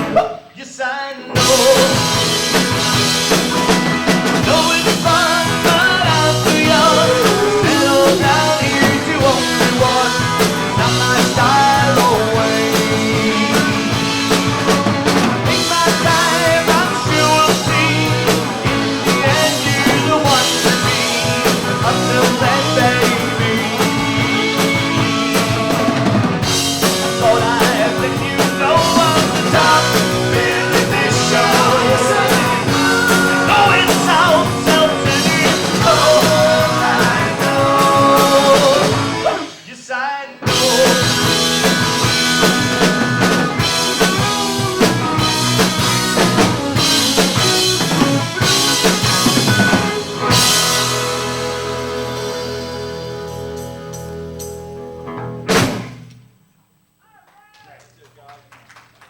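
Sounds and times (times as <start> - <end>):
rock band playing live: 0.0 - 0.5, 1.3 - 39.8, 40.4 - 56.2
person singing: 0.0 - 2.5, 4.3 - 25.3, 26.8 - 42.6.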